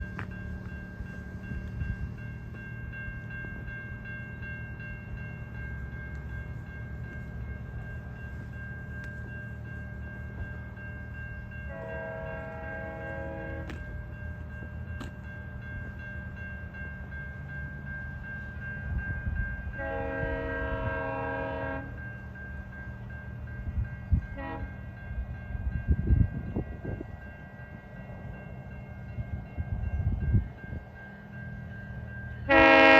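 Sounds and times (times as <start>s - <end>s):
diesel locomotive rumbling: 0.0s - 32.9s
train horn chord blasts: 11.7s - 13.8s, 19.8s - 22.0s, 24.3s - 24.8s, 32.4s - 32.9s.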